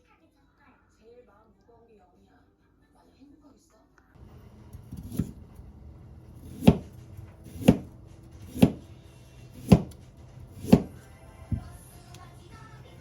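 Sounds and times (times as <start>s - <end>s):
knife chopping on cutting board: 4.8s - 5.5s, 6.3s - 11.8s.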